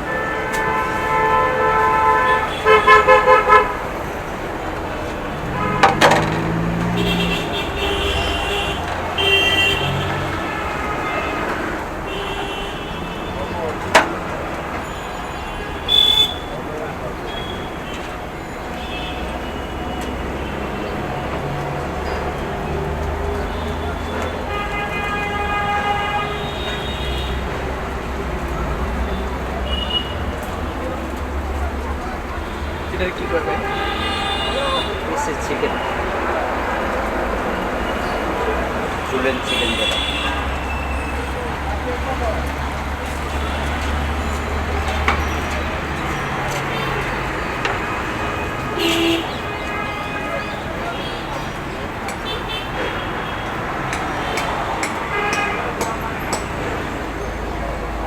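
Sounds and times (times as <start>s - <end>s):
vehicle horn: 0.0s - 4.1s, 5.2s - 13.6s, 14.8s - 16.6s, 23.5s - 27.6s, 32.4s - 36.0s, 39.2s - 41.4s, 46.6s - 51.6s, 52.2s - 56.5s
street traffic rumble: 0.0s - 58.0s.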